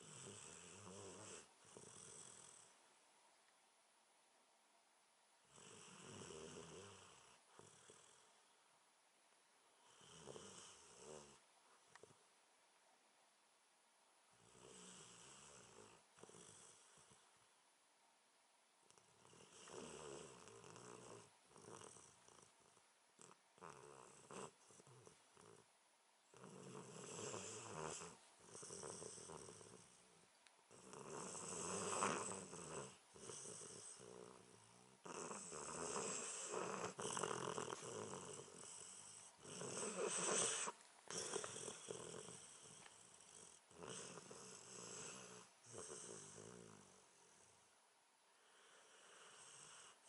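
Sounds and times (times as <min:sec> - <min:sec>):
person snoring: 0:00.0 - 0:02.7, 0:05.5 - 0:08.3, 0:09.9 - 0:11.4, 0:19.1 - 0:22.5, 0:23.2 - 0:25.6, 0:26.4 - 0:30.0, 0:30.7 - 0:47.6, 0:48.4 - 0:50.0.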